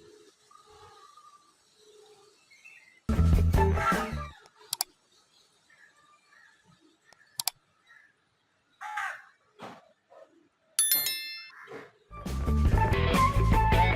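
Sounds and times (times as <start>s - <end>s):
sharp click: 7.1s - 7.6s
bright metallic ding: 10.8s - 11.7s.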